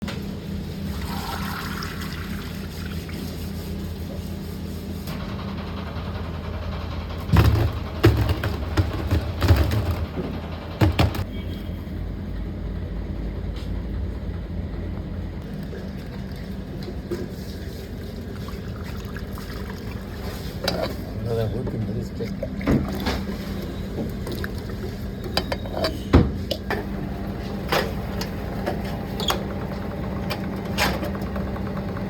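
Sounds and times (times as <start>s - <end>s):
factory machinery hum: 0.0s - 18.8s, 19.5s - 32.0s
loud knocks and clatters: 5.2s - 11.3s.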